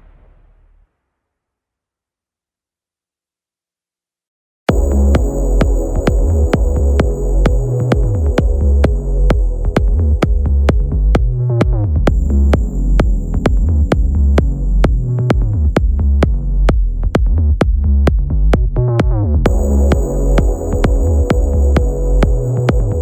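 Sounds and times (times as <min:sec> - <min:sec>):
rising synth sweeps: 0:04.7 - 0:15.8, 0:19.5 - 0:23.0
drum machine beat: 0:04.7 - 0:23.0
heavy synth bass: 0:04.7 - 0:23.0.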